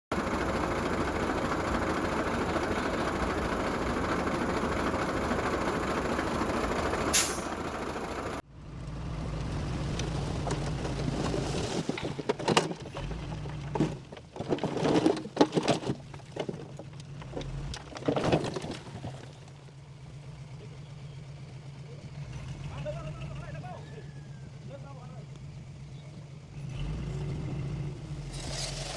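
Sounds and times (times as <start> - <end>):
diesel truck engine running: 0.1 - 11.2, 19.0 - 28.9
low engine hum: 0.1 - 14.4, 15.9 - 28.9
air brake hiss: 7.1 - 7.6.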